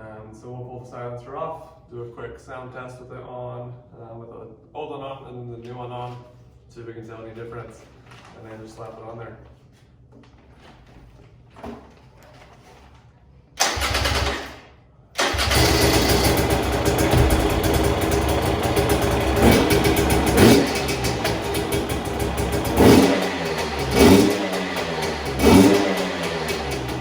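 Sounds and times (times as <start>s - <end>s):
two-stroke engine starting and idling: 13.6s - 27.0s
engine throttle blips: 15.2s - 27.0s.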